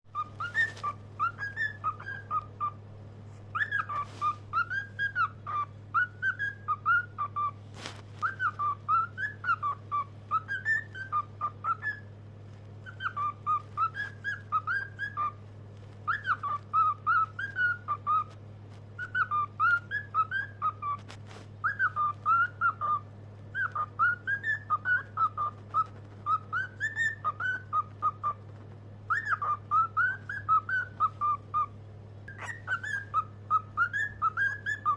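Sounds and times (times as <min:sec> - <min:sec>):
cockatiel whistling: 0:00.1 - 0:02.8, 0:03.5 - 0:07.6, 0:08.2 - 0:12.1, 0:12.8 - 0:15.4, 0:16.0 - 0:18.4, 0:19.0 - 0:34.9.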